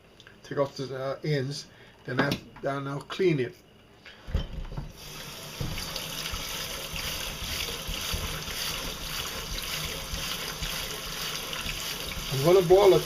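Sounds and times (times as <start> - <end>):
tap water running into sink: 4.9 - 13.0.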